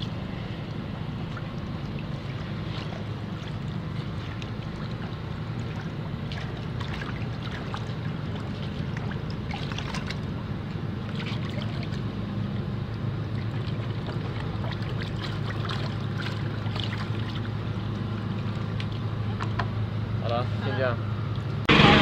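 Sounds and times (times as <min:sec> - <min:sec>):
machine humming: 0:15.6 - 0:22.0.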